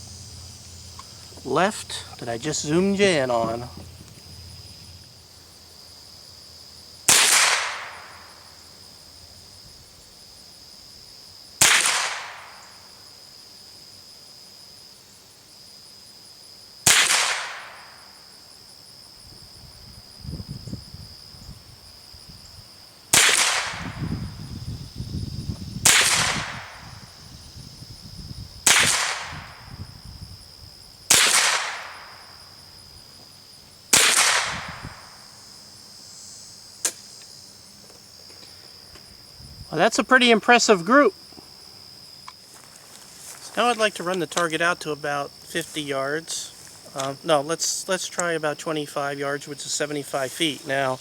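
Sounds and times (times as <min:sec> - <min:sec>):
insects buzzing: 0:00.0 - 0:51.0
rifle shots: 0:07.1 - 0:08.1, 0:11.6 - 0:12.5, 0:23.2 - 0:23.8, 0:25.9 - 0:26.6, 0:28.7 - 0:29.3, 0:31.1 - 0:32.1, 0:34.0 - 0:34.6.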